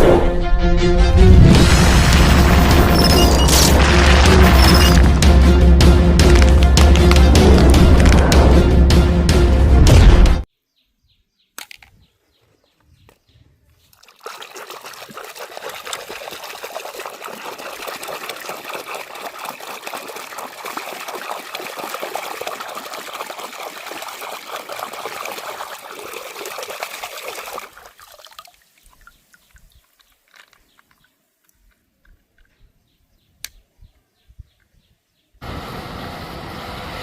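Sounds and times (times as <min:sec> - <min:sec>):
water running in a stream: 0:13.8 - 0:31.1
click: 0:33.4 - 0:33.6.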